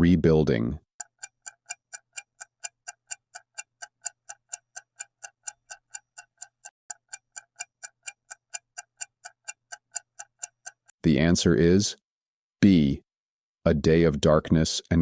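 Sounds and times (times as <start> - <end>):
clock ticking: 0.0 - 11.0.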